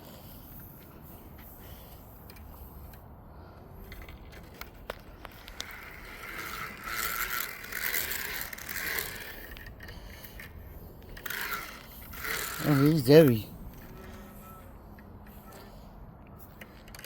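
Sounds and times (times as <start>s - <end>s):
fishing reel whirring and clicking: 4.6s - 14.3s.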